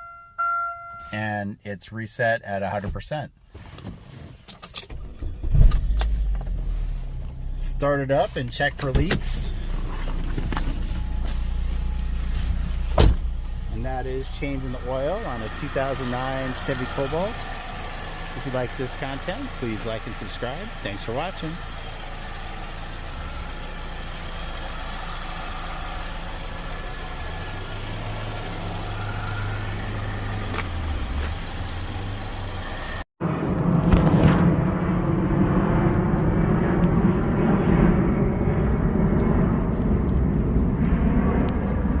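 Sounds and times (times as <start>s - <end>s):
car engine idling: 5.3s - 33.1s.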